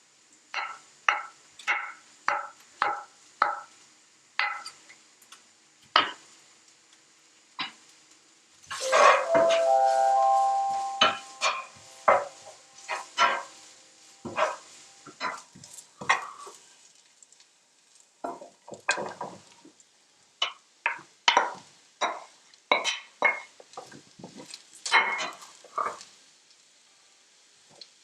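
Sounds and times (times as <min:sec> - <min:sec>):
dishes and utensils clinking: 0:08.7 - 0:16.5, 0:24.9 - 0:26.0.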